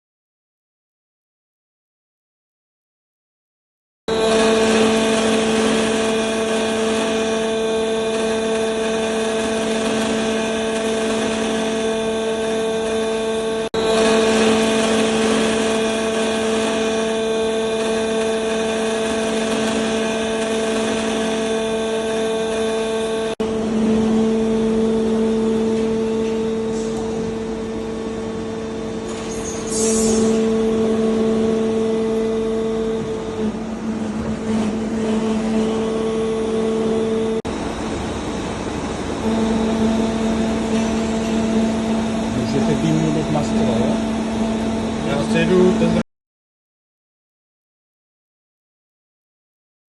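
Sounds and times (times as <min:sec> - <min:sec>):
lathe humming with whine: 0:04.1 - 0:46.0
brief high hiss: 0:29.3 - 0:30.4.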